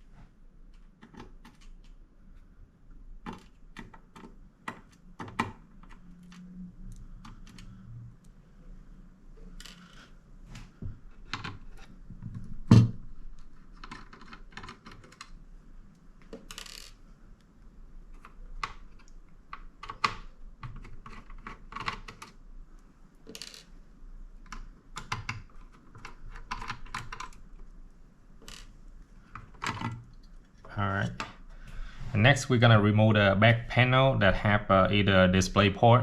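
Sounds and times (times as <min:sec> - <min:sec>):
plastic clicks and rattles: 0:11.2 - 0:15.4, 0:29.3 - 0:31.3.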